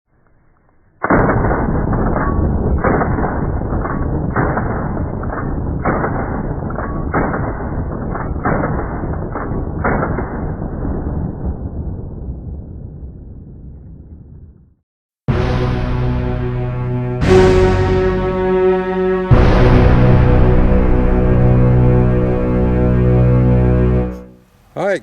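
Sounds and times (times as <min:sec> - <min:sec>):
shotgun blasts: 0:01.0 - 0:10.6
weaker bangs: 0:01.0 - 0:11.5, 0:15.3 - 0:23.4.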